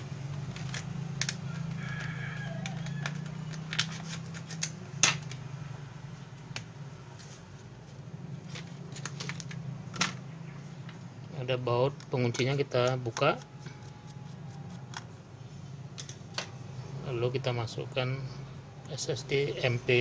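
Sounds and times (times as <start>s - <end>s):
laptop parts clicking and tapping: 0.4s - 5.4s, 12.0s - 15.2s.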